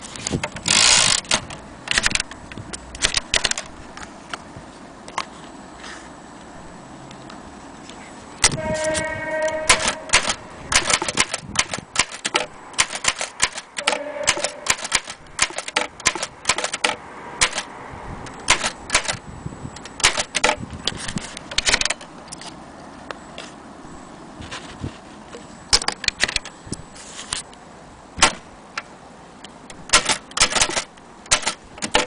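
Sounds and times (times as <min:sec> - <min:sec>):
typewriter key strikes: 0:09.7 - 0:17.7, 0:18.5 - 0:19.2, 0:20.0 - 0:20.6, 0:29.9 - 0:32.0.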